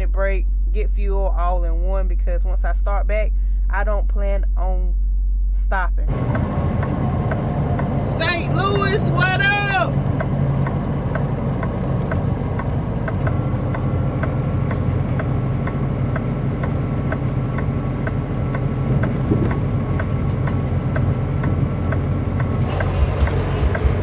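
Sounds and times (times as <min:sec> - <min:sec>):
diesel engine droning: 0:06.0 - 0:24.0
light ticking: 0:06.3 - 0:24.0.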